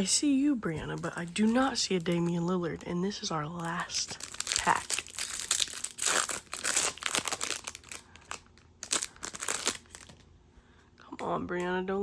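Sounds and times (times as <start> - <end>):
plastic wrapper crinkling: 0.0 - 10.3.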